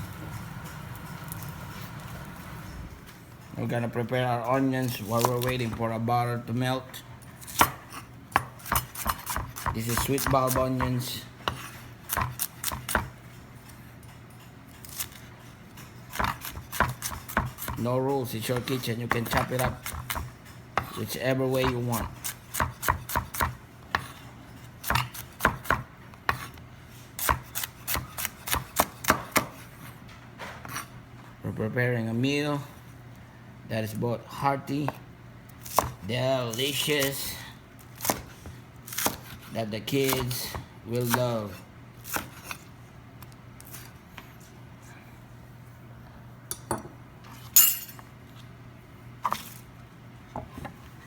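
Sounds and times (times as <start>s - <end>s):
steady low hum: 0.0s - 51.0s
knife chopping on cutting board: 7.4s - 13.2s, 16.1s - 17.8s, 18.5s - 21.0s, 21.6s - 24.2s, 24.8s - 26.6s, 27.2s - 29.7s, 35.6s - 36.0s, 38.0s - 41.4s, 42.0s - 42.6s
dishes clinking and knocking: 46.5s - 47.0s.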